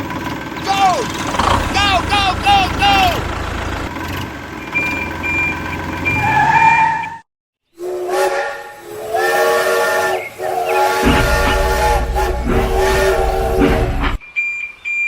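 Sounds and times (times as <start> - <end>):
toy train electronic whistle: 7.8 - 14.2.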